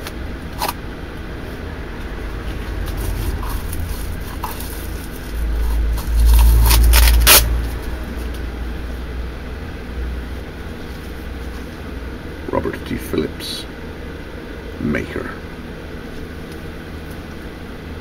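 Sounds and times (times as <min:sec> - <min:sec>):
low rumble: 0:01.3 - 0:10.7
packaging rustling: 0:02.6 - 0:07.5.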